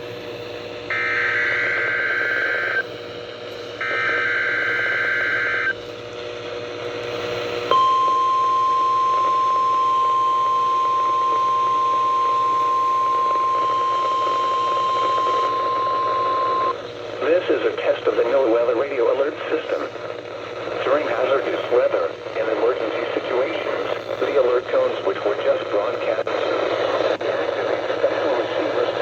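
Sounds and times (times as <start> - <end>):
faint hum: 0.0 - 29.0
radio static hiss: 0.4 - 29.0.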